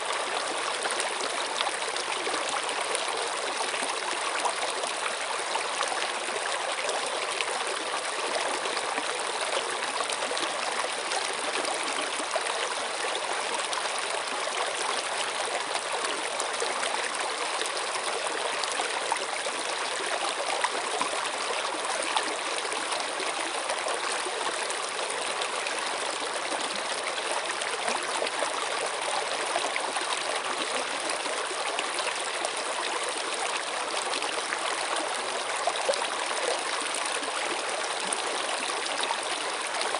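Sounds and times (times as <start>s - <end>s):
stream flowing over stones: 0.0s - 39.9s.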